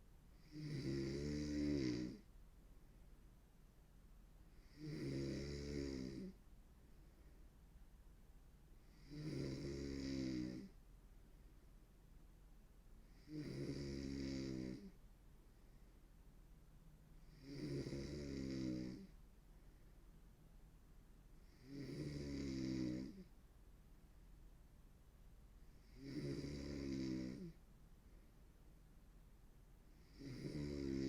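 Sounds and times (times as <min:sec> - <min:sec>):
woman snoring: 0:00.4 - 0:02.2, 0:04.6 - 0:06.4, 0:08.9 - 0:10.8, 0:13.1 - 0:15.0, 0:17.3 - 0:19.1, 0:21.5 - 0:23.3, 0:25.8 - 0:27.6, 0:30.0 - 0:31.0.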